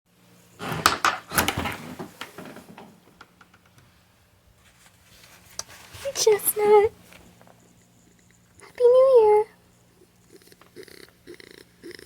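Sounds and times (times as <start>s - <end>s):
porcupine raspy noises: 9.9s - 12.0s.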